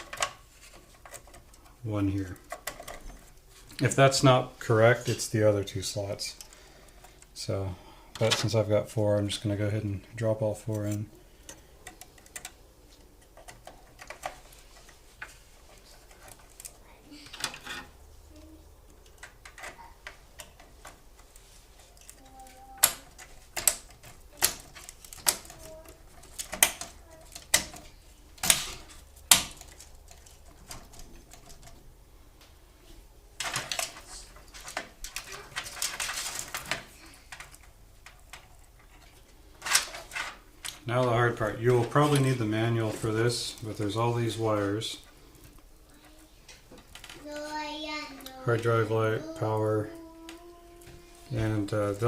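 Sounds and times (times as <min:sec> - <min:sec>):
rustling: 0:00.0 - 0:52.0.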